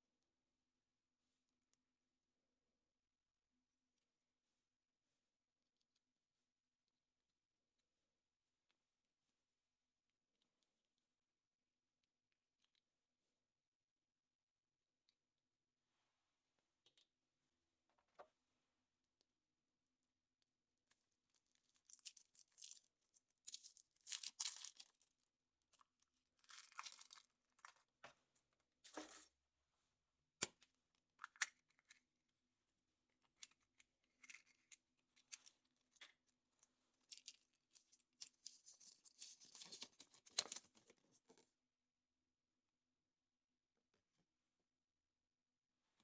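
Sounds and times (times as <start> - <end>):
foil wrapper tearing and crinkling: 21.8 - 25.0, 26.4 - 27.2.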